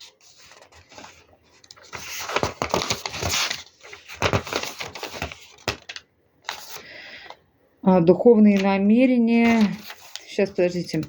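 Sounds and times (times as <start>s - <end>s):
paper rustling: 0.0s - 6.9s, 9.4s - 11.0s.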